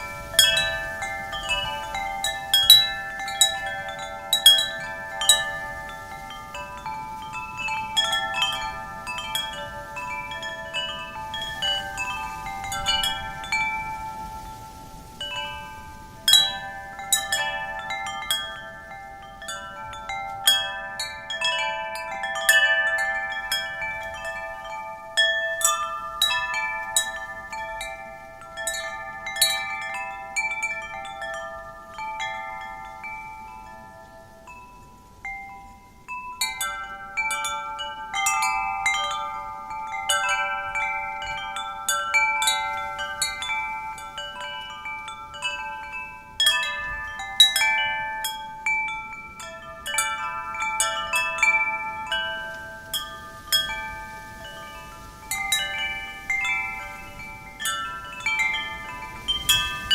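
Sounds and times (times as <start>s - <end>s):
wind chimes ringing: 0.0s - 59.9s.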